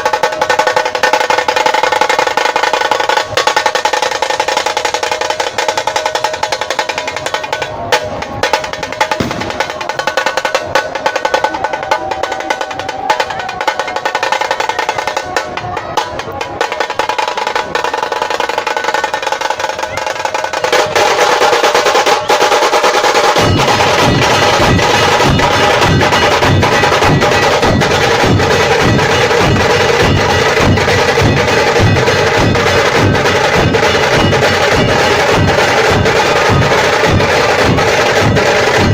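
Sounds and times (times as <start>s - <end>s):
fast drum roll: 0.0s - 38.9s
deep bass drum strokes: 8.0s - 12.0s, 23.4s - 38.9s.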